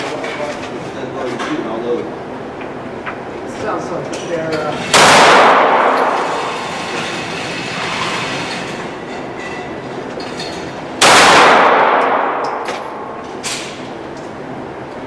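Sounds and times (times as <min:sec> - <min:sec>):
pistol shot with echo: 0:04.9 - 0:06.5, 0:11.0 - 0:13.8.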